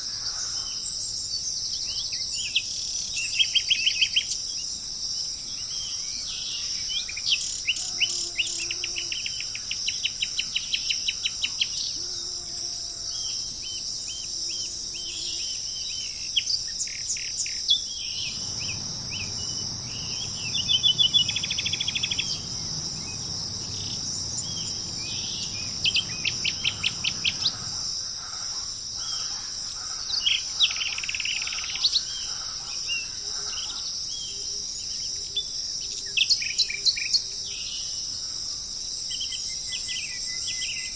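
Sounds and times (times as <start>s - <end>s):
crickets chirping: 0.0s - 40.9s
birds chirping: 17.5s - 32.3s
low rumble: 17.9s - 28.2s.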